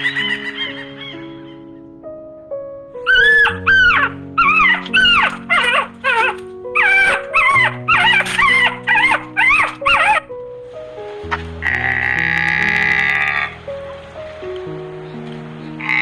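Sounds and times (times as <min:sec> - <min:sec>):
background music: 0:00.0 - 0:16.0
dog yipping and whining: 0:03.0 - 0:10.3.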